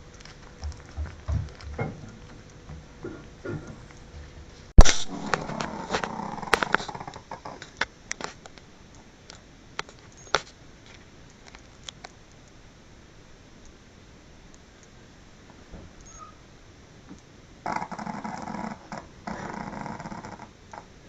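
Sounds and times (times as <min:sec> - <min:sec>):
faint clicks: 0:05.3 - 0:12.6
dog snoring: 0:17.7 - 0:20.8.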